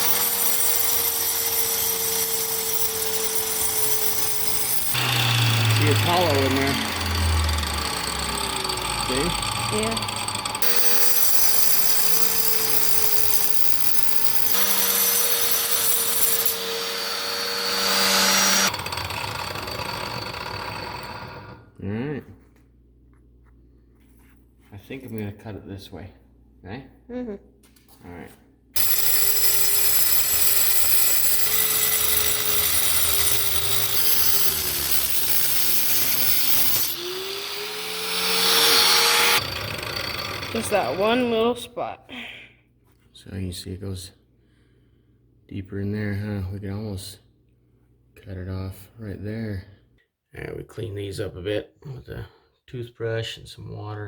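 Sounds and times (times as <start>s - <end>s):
angle grinder grinding rock: 0.0s - 21.6s, 28.8s - 41.6s.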